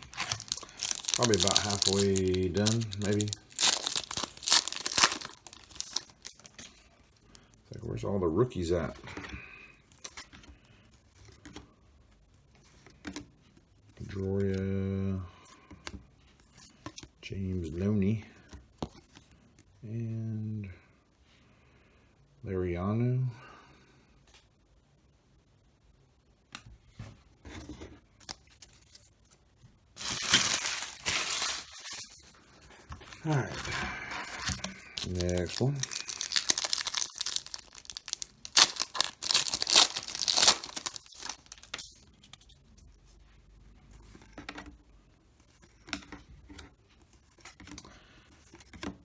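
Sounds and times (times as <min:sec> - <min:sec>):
cards clicking and rustling: 0:00.0 - 0:06.7, 0:34.4 - 0:42.4
foil wrapper tearing and crinkling: 0:00.0 - 0:06.7, 0:30.0 - 0:32.2, 0:34.3 - 0:42.0.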